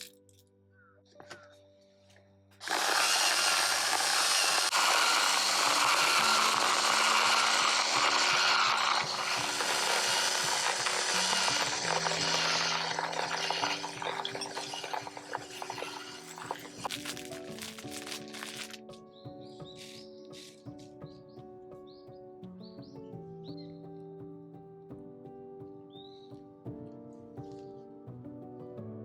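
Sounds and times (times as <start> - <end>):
soft background music: 0.0 - 2.6, 5.8 - 29.0
coffee mill grinding beans: 2.6 - 18.9, 19.7 - 20.6.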